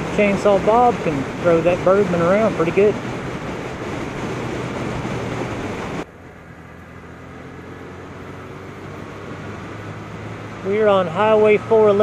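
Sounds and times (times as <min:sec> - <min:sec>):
wind noise on microphone: 0:00.0 - 0:06.1
motorcycle engine: 0:00.0 - 0:12.0
road noise: 0:00.0 - 0:12.0.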